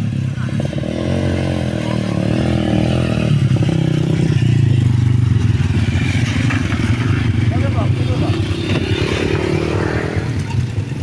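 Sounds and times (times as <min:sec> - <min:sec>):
motorcycle engine running hard: 0:00.0 - 0:11.0.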